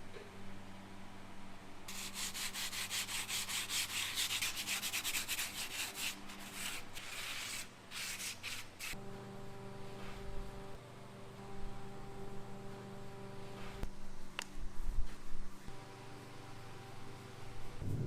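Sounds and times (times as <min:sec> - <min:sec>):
hand sanding strokes: 0:01.9 - 0:09.0.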